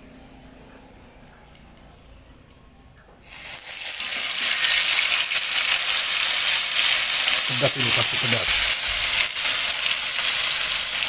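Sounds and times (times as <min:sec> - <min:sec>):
loud frying sizzle: 0:03.2 - 0:11.0.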